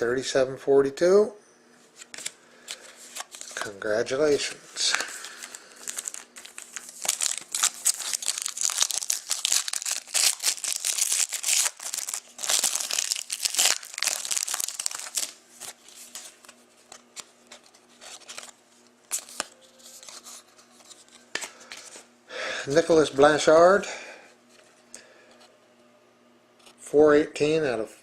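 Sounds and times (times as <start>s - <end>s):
plastic wrapping crinkling and tearing: 2.0s - 3.7s, 4.8s - 21.2s.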